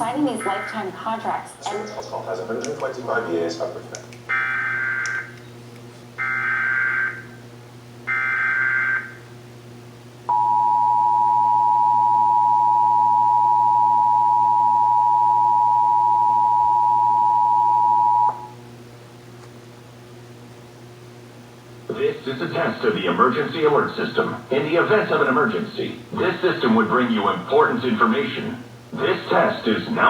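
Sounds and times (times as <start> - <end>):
faint low hum: 0.0 - 30.0
warbling digital data tones: 0.2 - 1.1
two-tone attention signal: 0.4 - 0.9, 10.3 - 18.5.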